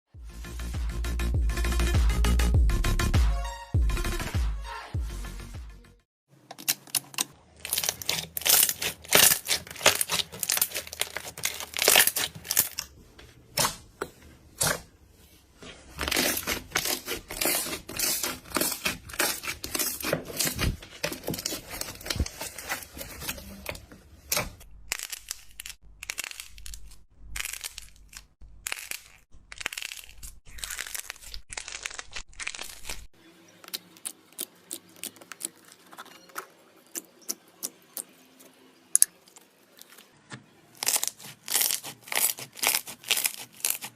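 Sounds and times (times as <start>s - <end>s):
slime crackling and popping: 6.6s - 12.9s, 16.0s - 23.3s, 24.3s - 36.2s, 40.8s - 43.9s.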